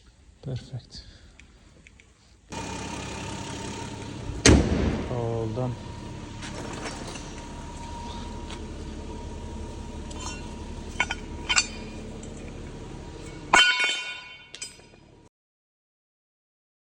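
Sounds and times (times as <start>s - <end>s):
low hum: 2.5s - 15.3s
metallic clank: 5.9s - 15.2s
metal objects clinking: 6.4s - 8.1s, 10.0s - 15.1s.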